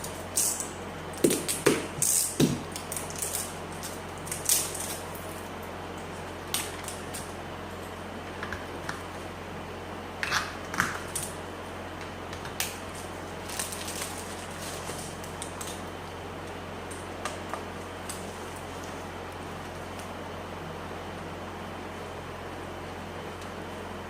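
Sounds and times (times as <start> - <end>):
low electrical hum: 0.0 - 24.0
small objects clicking and rustling: 12.6 - 15.9.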